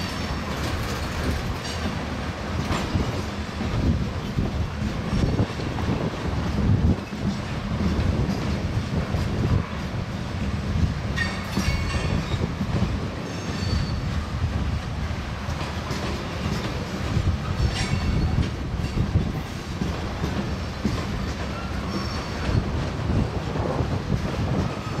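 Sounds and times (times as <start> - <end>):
freight train rumbling: 0.0 - 25.0
train wheels squealing: 11.2 - 12.6, 13.2 - 14.3, 17.4 - 19.7, 21.2 - 22.9.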